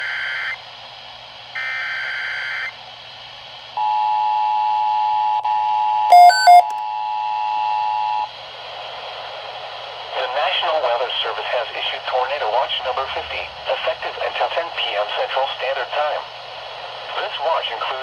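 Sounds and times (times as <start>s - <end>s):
buzzing data signal bursts: 6.1s - 6.7s
short loud beeps: 6.1s - 6.8s
steady two-tone attention signal: 6.1s - 6.8s.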